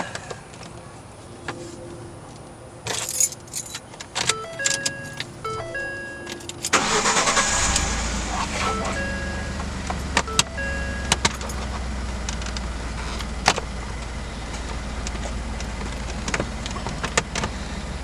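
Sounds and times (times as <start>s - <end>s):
dashboard chimes: 1.3s - 7.3s, 8.6s - 11.7s
car engine cranking and running: 2.9s - 18.0s.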